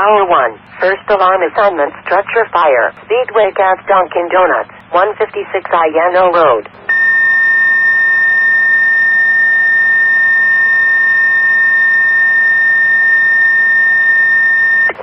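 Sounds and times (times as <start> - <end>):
dispatch announcements over radio: 0.0 - 15.0.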